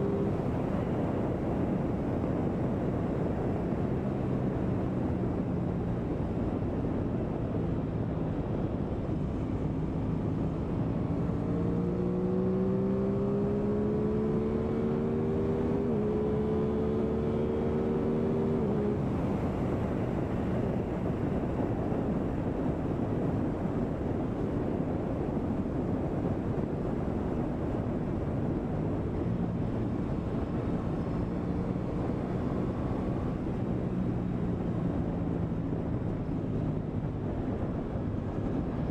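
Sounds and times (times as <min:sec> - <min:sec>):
wind rush on microphone: 0:00.0 - 0:38.9
motorcycle engine accelerating: 0:10.4 - 0:20.7.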